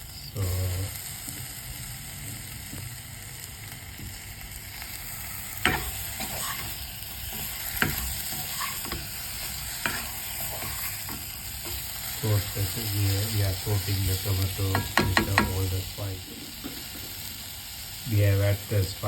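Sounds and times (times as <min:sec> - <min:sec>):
food sizzling in hot oil: 0:00.0 - 0:19.0
utensil scraping wok: 0:04.1 - 0:18.0
utensil knocking against wok: 0:07.8 - 0:09.1, 0:14.7 - 0:15.6.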